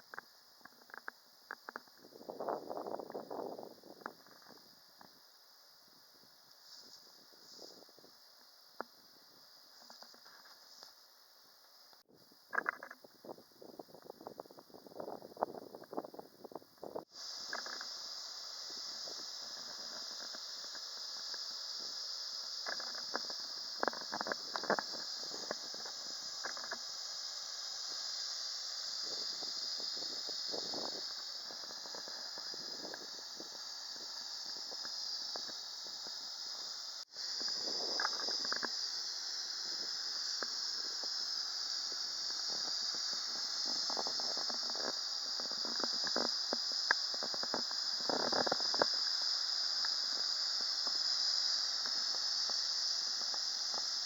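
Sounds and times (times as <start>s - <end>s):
faint crackles: 14.0s - 54.0s
rushing water hiss: 17.0s - 54.0s.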